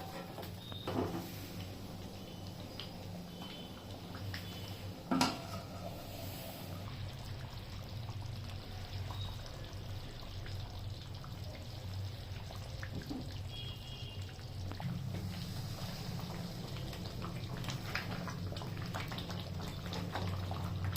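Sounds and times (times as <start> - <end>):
liquid trickling and dripping: 0.2 - 20.9.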